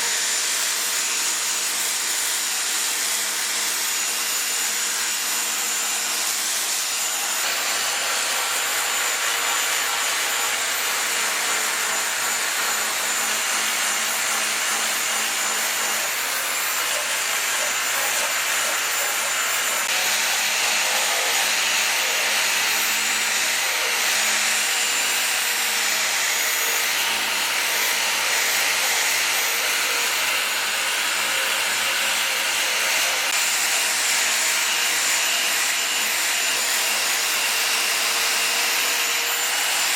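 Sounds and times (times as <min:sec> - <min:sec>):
angle grinder cutting wood: 0:00.0 - 0:39.9.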